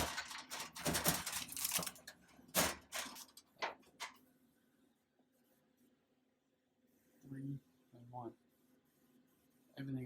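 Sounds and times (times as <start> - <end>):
vending machine clattering: 0.0 - 4.2.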